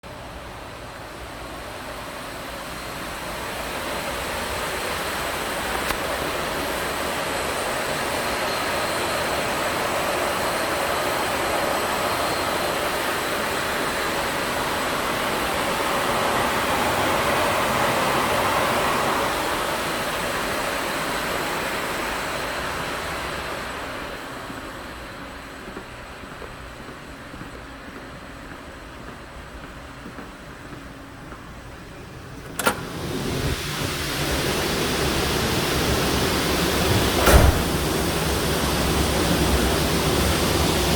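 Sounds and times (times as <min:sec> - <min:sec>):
rushing air noise: 0:35.7 - 0:40.9.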